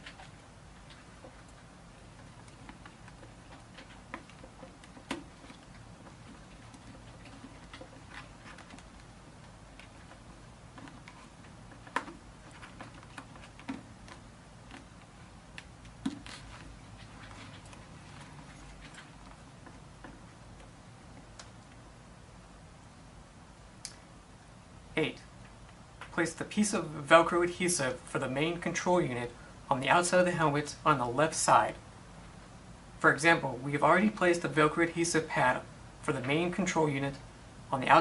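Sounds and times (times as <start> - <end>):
hands handling plastic helmet: 0.0 - 21.5.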